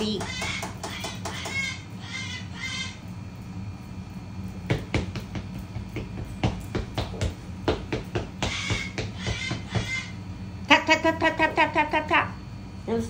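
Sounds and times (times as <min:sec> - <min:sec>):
sharp knocks and clicks: 0:00.0 - 0:01.6, 0:04.6 - 0:10.0
ice maker humming: 0:00.0 - 0:06.0.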